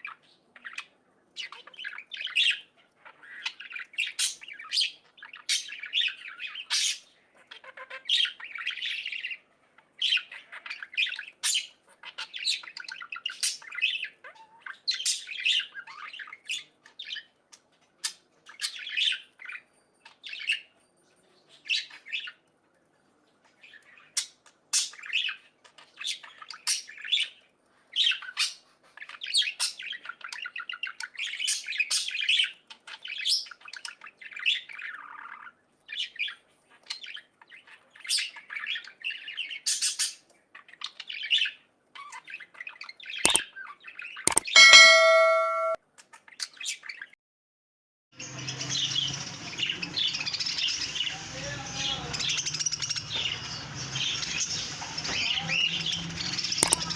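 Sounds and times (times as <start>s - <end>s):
budgerigars chirping: 10.0s - 17.3s.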